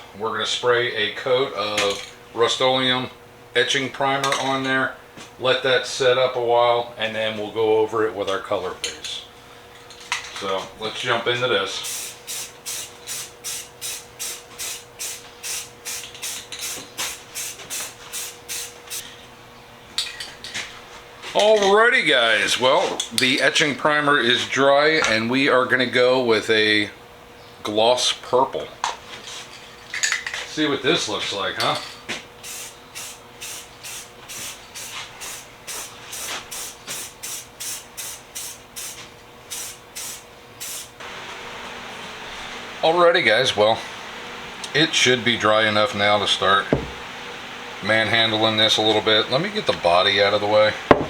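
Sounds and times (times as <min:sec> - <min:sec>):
aerosol can spraying: 0:11.8 - 0:19.0, 0:32.4 - 0:41.6, 0:46.7 - 0:47.1.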